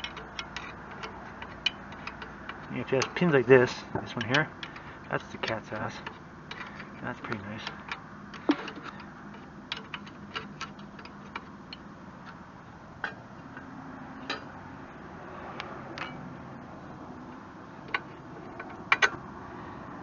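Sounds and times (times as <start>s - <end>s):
wrench clicking on metal bolts: 0.0s - 12.4s, 17.8s - 19.2s.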